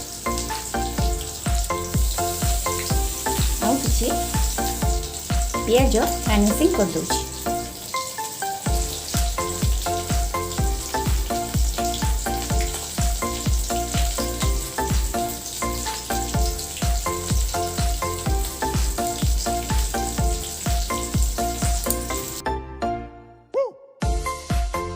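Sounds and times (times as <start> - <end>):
background music with beat: 7.5 - 22.6, 24.0 - 24.9.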